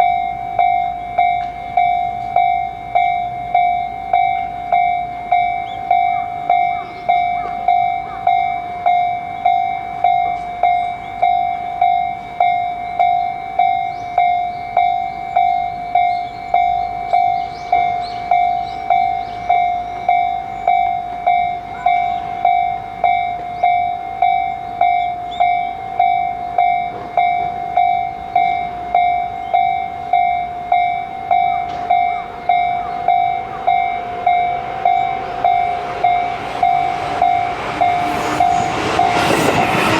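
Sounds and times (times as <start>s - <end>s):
level crossing warning bell: 0.0s - 39.9s.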